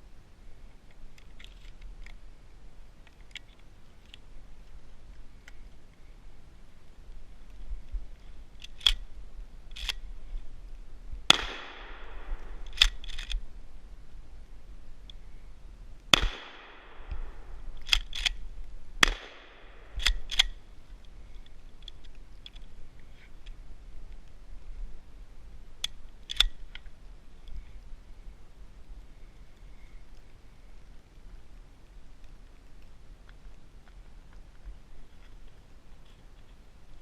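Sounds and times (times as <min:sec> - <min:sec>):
gun action metallic clicks: 0:08.6 - 0:09.1, 0:09.7 - 0:10.0, 0:11.3 - 0:13.4, 0:17.1 - 0:18.4, 0:19.0 - 0:20.6, 0:25.8 - 0:26.9
shotgun blasts: 0:11.3 - 0:13.0, 0:16.1 - 0:17.6, 0:19.0 - 0:20.4.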